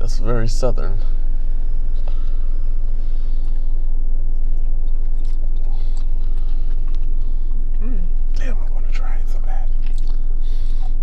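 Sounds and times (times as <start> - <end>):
steady low rumble: 0.0 - 11.0.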